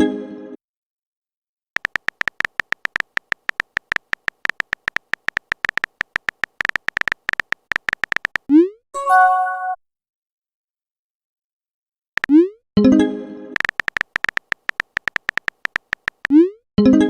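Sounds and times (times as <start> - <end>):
rapid typing clicks: 1.8 - 8.5, 12.2 - 12.4, 13.6 - 16.4.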